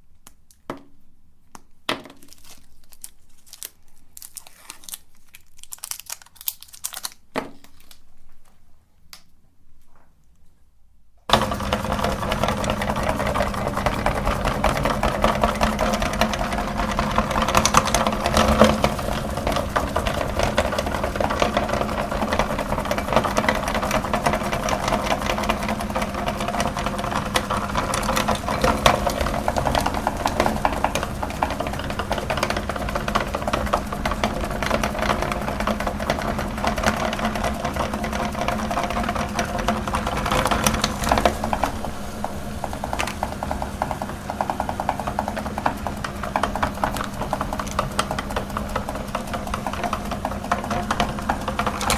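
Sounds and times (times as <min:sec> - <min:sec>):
crinkling and rustling: 0:00.2 - 0:10.6, 0:11.3 - 0:51.9
electric meat grinder running: 0:11.3 - 0:51.9.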